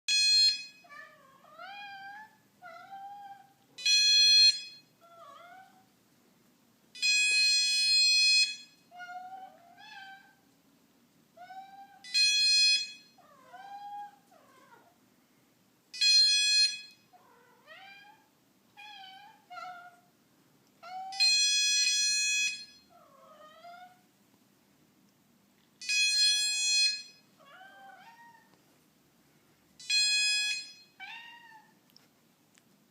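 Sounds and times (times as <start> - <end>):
electronic alarm beeping: 0.1 - 0.8, 3.8 - 5.0, 7.0 - 8.8, 12.1 - 13.2, 16.0 - 17.1, 21.2 - 22.9, 25.8 - 27.3, 29.8 - 31.0
cats meowing: 0.9 - 3.7, 5.0 - 5.9, 13.2 - 15.0, 17.2 - 20.1, 23.0 - 24.1, 27.4 - 28.6, 31.0 - 31.8.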